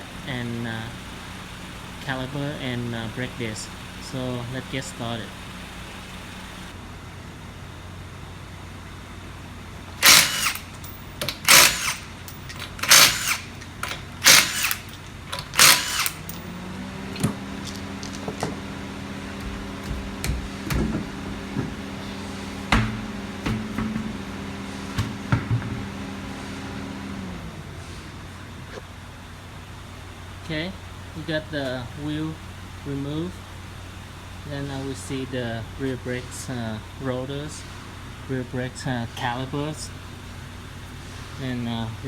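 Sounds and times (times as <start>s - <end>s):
mechanical hum: 0.0s - 42.0s
impact wrench bursts: 10.0s - 26.8s.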